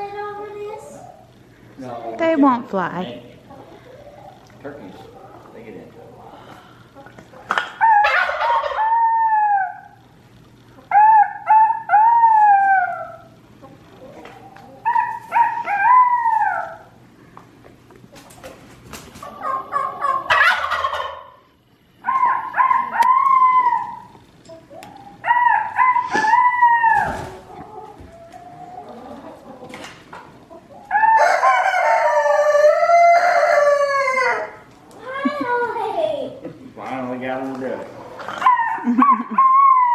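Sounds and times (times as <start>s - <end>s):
turkeys gobbling: 3.4s - 10.0s, 10.6s - 17.0s, 19.2s - 35.6s, 37.4s - 39.9s
rooster crowing: 7.7s - 10.0s, 22.0s - 24.2s, 25.2s - 27.3s, 30.9s - 34.7s.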